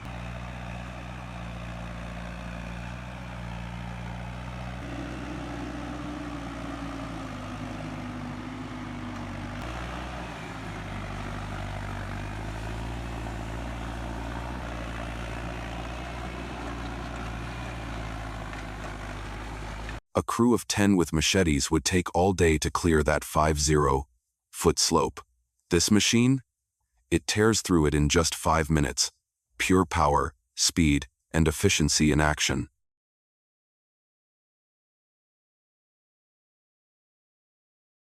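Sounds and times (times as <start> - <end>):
heavy vehicle engine under load: 0.0 - 20.0.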